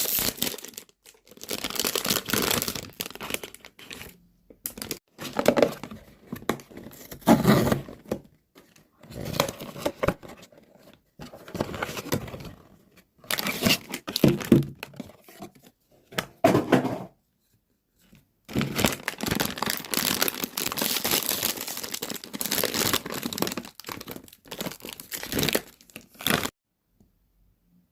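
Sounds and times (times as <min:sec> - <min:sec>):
packaging being torn and crinkled: 0:00.0 - 0:04.1, 0:18.5 - 0:26.5.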